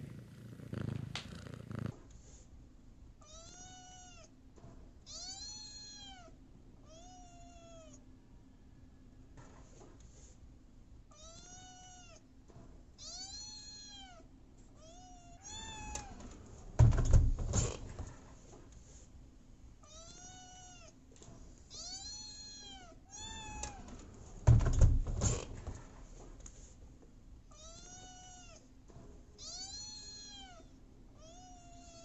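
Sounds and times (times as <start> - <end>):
cat meowing: 3.2 - 4.3, 5.1 - 8.0, 11.1 - 12.2, 13.0 - 16.3, 19.8 - 21.0, 21.7 - 23.9, 27.5 - 28.6, 29.4 - 32.0
loud knocking thumps: 16.8 - 18.2, 24.4 - 25.9.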